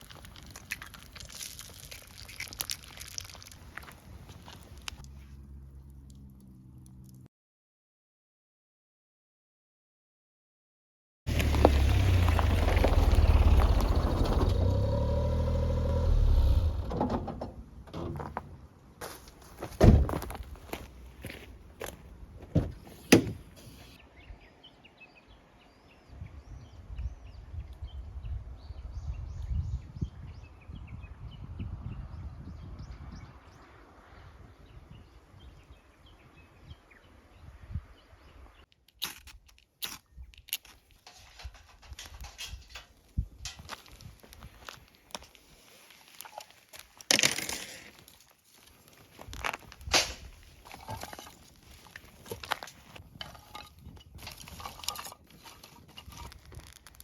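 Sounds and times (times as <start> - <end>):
low outdoor rumble: 0.0 - 7.3, 11.3 - 24.0
vehicle engine running: 11.3 - 16.9
sharp cracks: 49.6 - 50.4.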